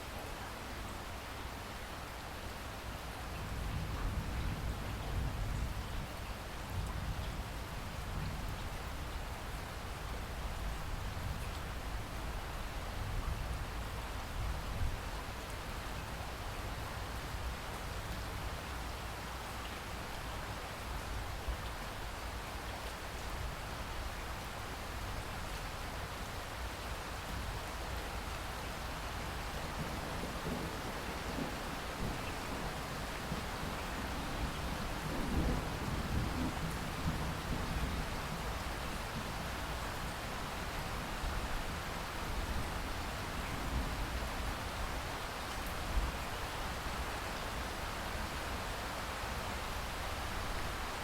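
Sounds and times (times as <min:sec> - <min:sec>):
steady rain falling: 0:00.0 - 0:51.0
louder raindrop patter: 0:24.8 - 0:51.0.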